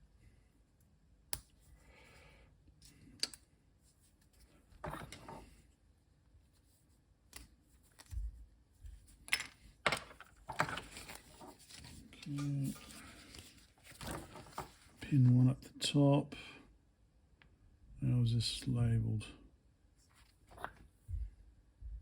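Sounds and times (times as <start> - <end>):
clicks and taps of small tools: 2.8 - 3.4.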